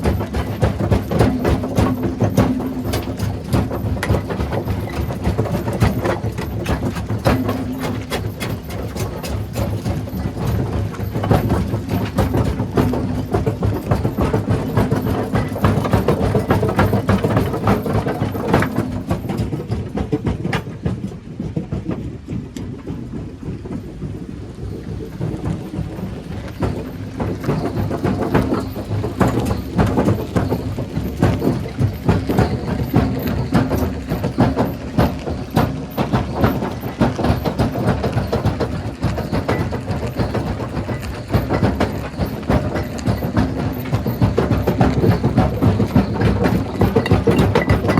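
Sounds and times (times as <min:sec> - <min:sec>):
low machine drone: 0:00.0 - 0:19.6.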